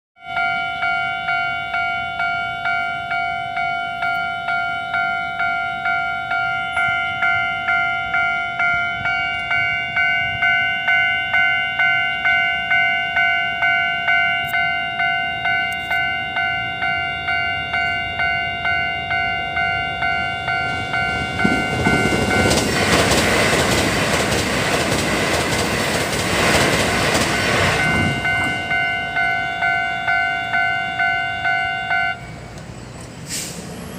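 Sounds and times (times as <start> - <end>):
level crossing alarm ringing: 0.2 - 23.8, 26.4 - 32.4
train wheels rushing on rails: 20.0 - 29.8, 32.1 - 33.9.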